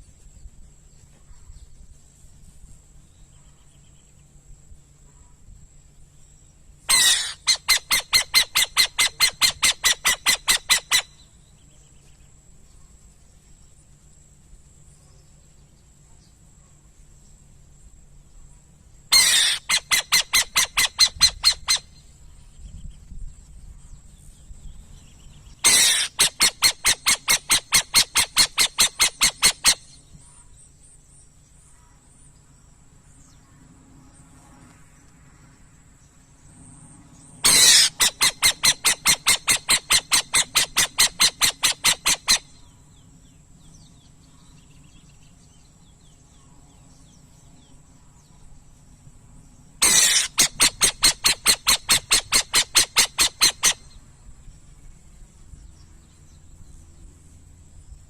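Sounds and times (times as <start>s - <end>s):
owl rasping calls: 6.9s - 11.4s, 19.1s - 22.1s, 25.6s - 30.5s, 37.4s - 42.8s, 49.8s - 54.0s.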